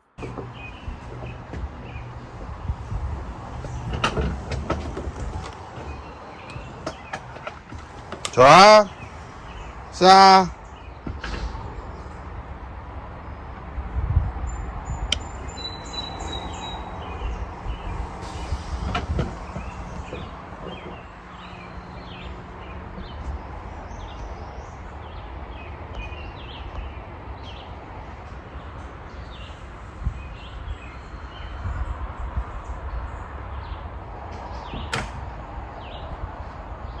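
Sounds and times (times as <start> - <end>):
wind rumble on microphone: 0.2 - 8.2, 10.7 - 37.0
small birds chirping: 0.2 - 11.0, 14.5 - 27.8.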